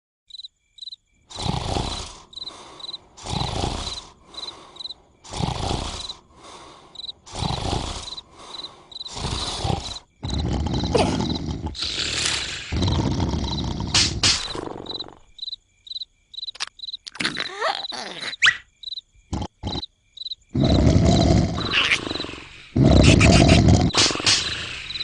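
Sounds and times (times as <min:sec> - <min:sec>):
crickets chirping: 0:00.3 - 0:25.0
cartoon snoring: 0:01.3 - 0:15.3, 0:19.3 - 0:19.9, 0:20.5 - 0:25.0.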